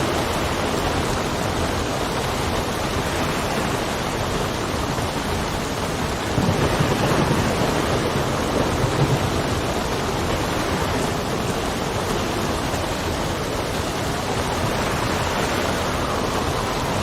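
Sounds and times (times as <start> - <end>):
steady rain: 0.0 - 17.0
wind: 0.0 - 17.0
rumble of thunder: 6.1 - 12.6.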